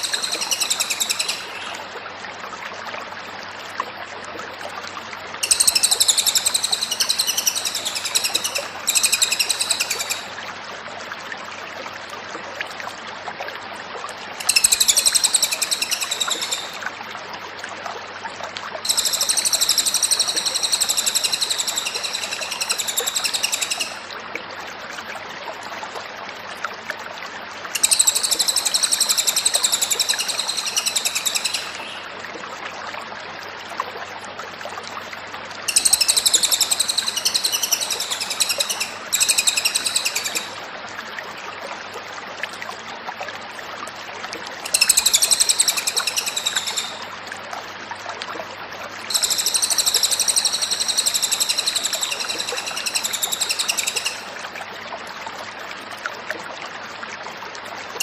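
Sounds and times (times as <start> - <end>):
songbird singing: 0.0 - 1.8, 5.4 - 10.3, 14.4 - 16.8, 18.9 - 24.0, 27.8 - 32.0, 35.7 - 40.6, 44.7 - 47.0, 49.1 - 54.3.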